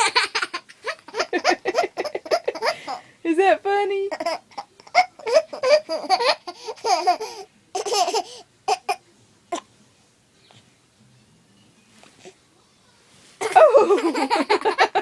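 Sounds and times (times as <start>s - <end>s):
toddler laughing: 0.0s - 3.0s, 4.1s - 9.0s.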